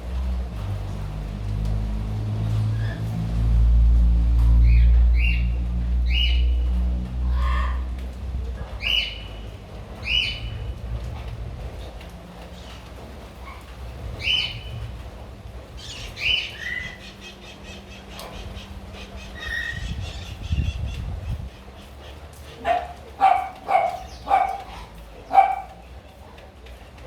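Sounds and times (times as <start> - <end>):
rain pattering: 0.0 - 27.0
dog barking: 22.6 - 25.9.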